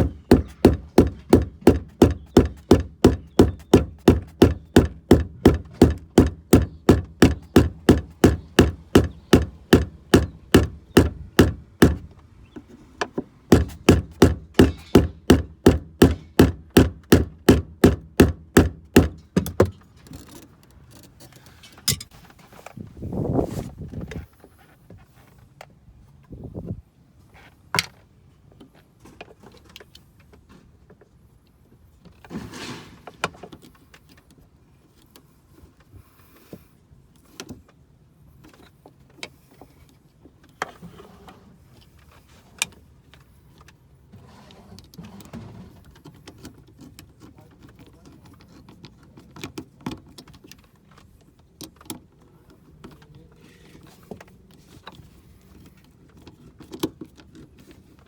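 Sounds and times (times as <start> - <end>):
clicks and knocks on car parts: 0.0 - 21.2
scraping rustles: 19.8 - 26.3, 32.0 - 36.6, 38.4 - 49.3.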